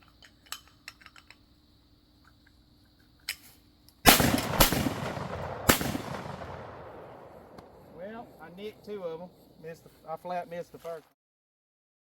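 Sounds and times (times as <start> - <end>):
shotgun shots with echo: 4.1 - 8.0.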